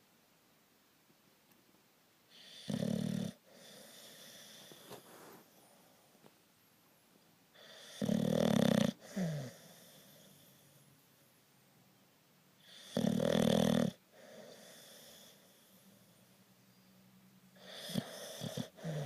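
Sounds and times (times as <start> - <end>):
loud snores: 2.3 - 4.9, 7.6 - 10.6, 12.6 - 15.8, 17.6 - 19.0.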